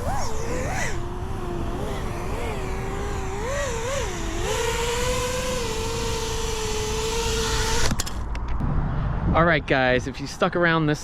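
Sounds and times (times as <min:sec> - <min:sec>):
quadcopter motors whining: 0:00.0 - 0:08.3.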